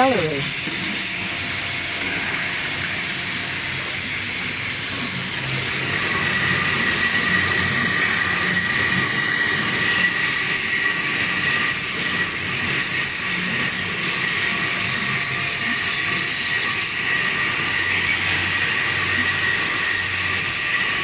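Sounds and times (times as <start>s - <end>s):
agitator churning water: 0.0s - 21.0s
mixer mechanical whine: 0.0s - 21.0s.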